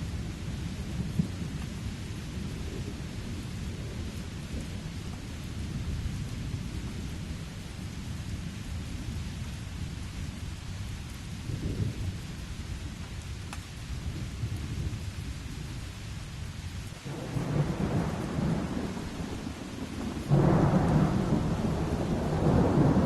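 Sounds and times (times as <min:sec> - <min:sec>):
steady rain: 0:00.0 - 0:23.0
rolling thunder rumbling: 0:17.0 - 0:23.0.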